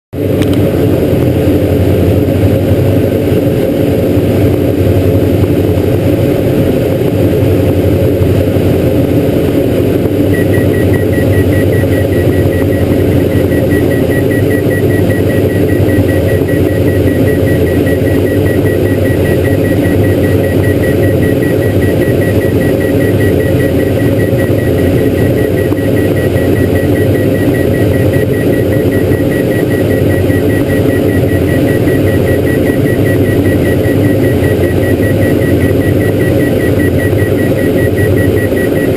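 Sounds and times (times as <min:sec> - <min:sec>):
aircraft engines drone: 0:00.2 - 0:38.9
high rapidly pulsing tone: 0:10.0 - 0:38.9.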